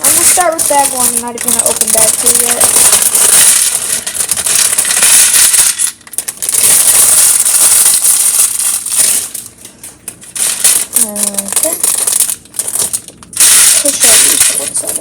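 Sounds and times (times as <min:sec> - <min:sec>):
plastic bag crinkling: 0:00.0 - 0:15.0
plastic pieces clattering: 0:00.0 - 0:15.0.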